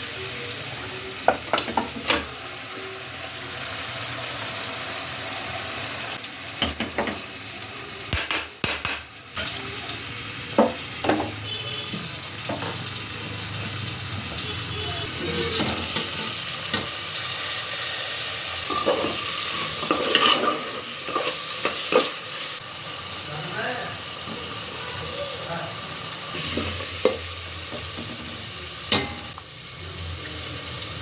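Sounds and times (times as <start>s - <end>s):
food sizzling in a pan: 0.0s - 31.0s
utensil scraping a pan: 15.1s - 16.4s, 18.7s - 22.1s.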